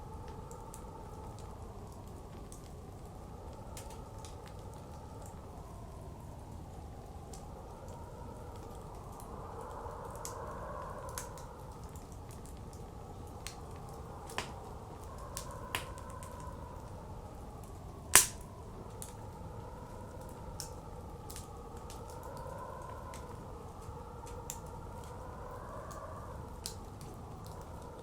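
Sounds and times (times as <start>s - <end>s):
blizzard wind gusts: 0.0s - 28.0s
wood fire crackling and popping: 0.1s - 28.0s.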